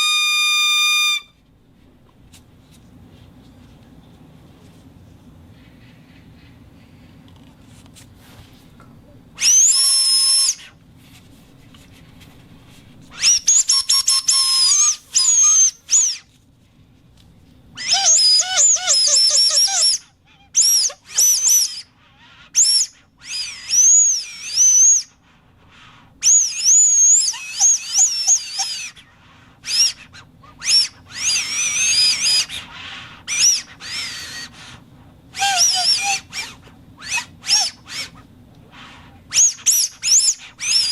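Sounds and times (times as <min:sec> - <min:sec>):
shrill whistle bursts: 0:00.0 - 0:01.4, 0:09.4 - 0:10.8, 0:13.1 - 0:16.3, 0:17.8 - 0:21.9, 0:22.6 - 0:25.2, 0:26.2 - 0:34.8, 0:35.4 - 0:40.9
faint low hum: 0:00.0 - 0:40.9.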